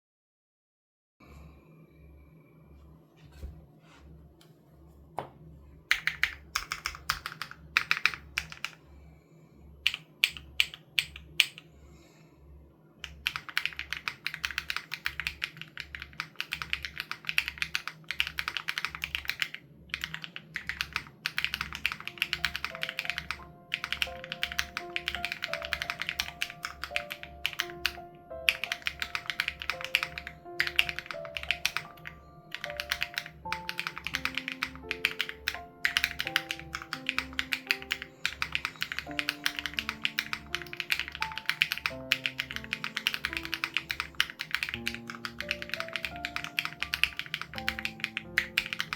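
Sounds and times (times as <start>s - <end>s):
mechanical keyboard typing: 5.9s - 8.8s, 9.8s - 11.7s, 13.0s - 48.9s
background music with steady beat: 16.6s - 48.9s.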